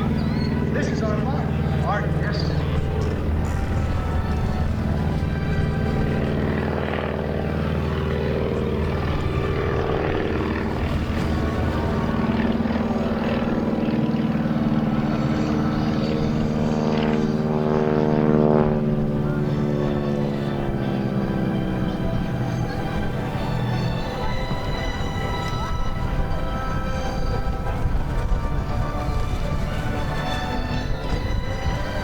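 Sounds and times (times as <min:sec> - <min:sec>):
music playing: 0:00.0 - 0:13.9, 0:18.7 - 0:32.0
propeller plane engine droning: 0:00.0 - 0:32.0.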